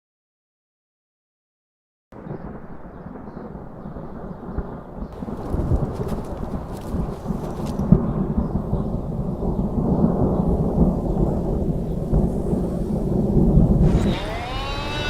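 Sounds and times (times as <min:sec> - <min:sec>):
sharp cracks: 0:05.1 - 0:08.0, 0:13.8 - 0:15.0.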